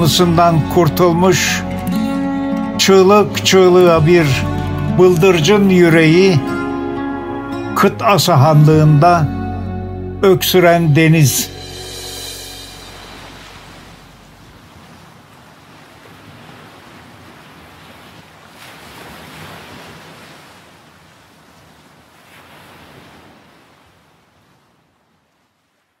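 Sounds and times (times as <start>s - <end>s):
sea waves washing in: 11.3s - 26.0s.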